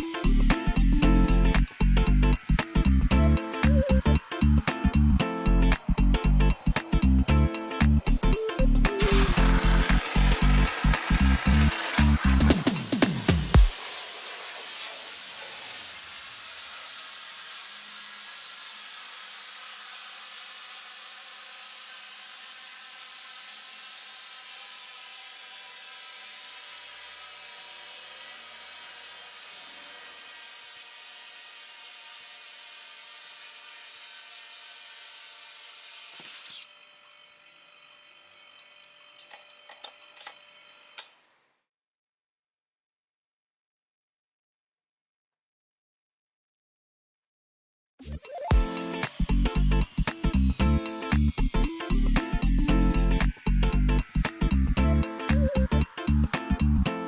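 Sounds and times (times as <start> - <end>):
thin high whine: 0.0 - 30.5, 48.1 - 56.8
air hissing under pressure: 0.2 - 21.4, 48.5 - 56.8.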